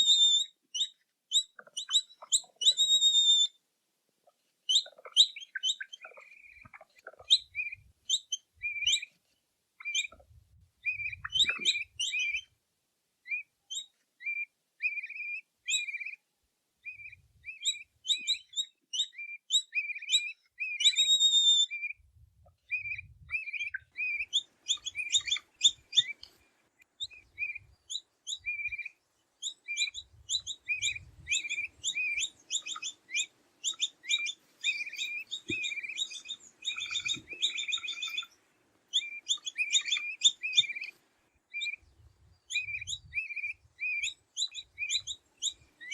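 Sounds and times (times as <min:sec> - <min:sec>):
capybara squeaking: 0:01.3 - 0:03.5, 0:29.7 - 0:38.3.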